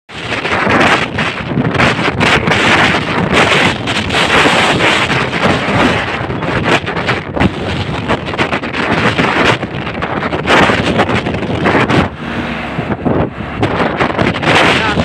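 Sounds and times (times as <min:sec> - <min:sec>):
wind buffeting microphone: 0:00.1 - 0:15.0.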